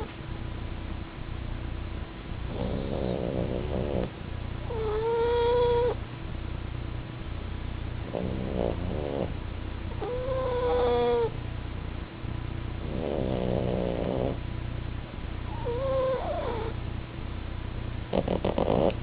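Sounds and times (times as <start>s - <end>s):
dog rattling snore: 2.5s - 4.1s, 8.1s - 9.3s, 10.0s - 11.3s, 12.8s - 14.4s, 15.5s - 16.7s, 18.1s - 19.0s
dog whistling snores: 2.5s - 4.1s, 4.7s - 6.0s, 8.1s - 9.3s, 10.0s - 11.3s, 12.9s - 14.4s, 15.5s - 16.8s, 18.1s - 19.0s.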